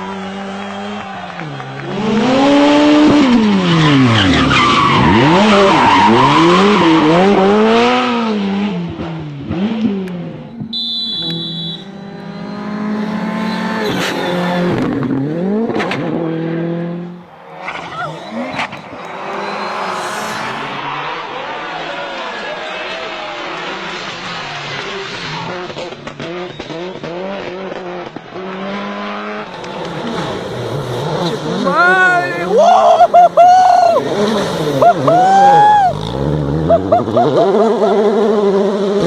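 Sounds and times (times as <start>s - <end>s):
rally car engines revving: 0.0s - 39.0s
high whistle: 10.7s - 11.9s.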